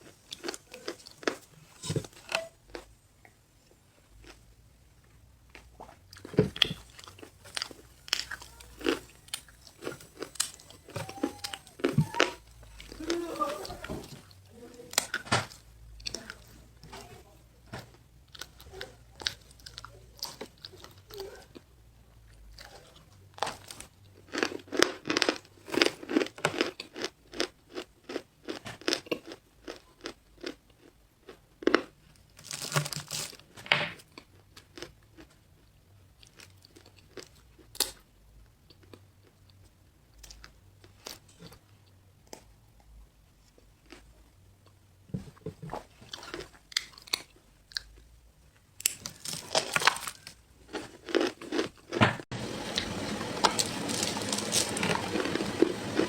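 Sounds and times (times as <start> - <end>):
crunchy chewing: 0.0 - 2.9, 5.5 - 17.2, 22.3 - 33.4, 48.7 - 52.0, 52.6 - 56.0.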